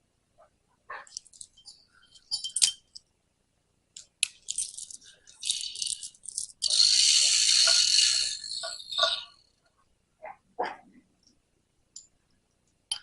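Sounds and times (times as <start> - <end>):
metal tools clinking and rattling: 1.1 - 3.0, 4.5 - 7.0.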